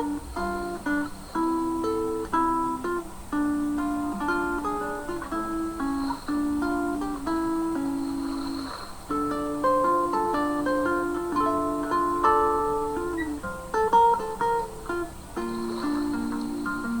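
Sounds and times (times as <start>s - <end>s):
acoustic guitar plucked melody: 0.0s - 17.0s.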